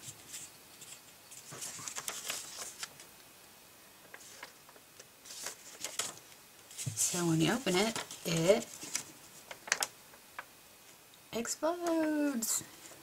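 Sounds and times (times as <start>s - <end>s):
cardstock rustling and crinkling: 0.0s - 3.1s, 4.0s - 10.5s.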